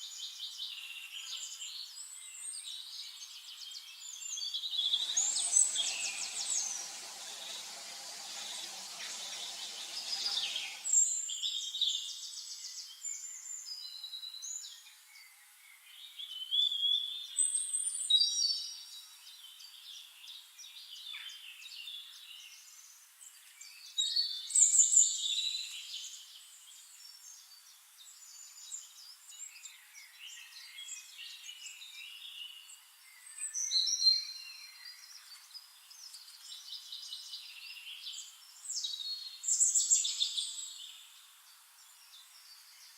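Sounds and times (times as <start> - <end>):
birds chirping and singing: 4.5 - 11.4.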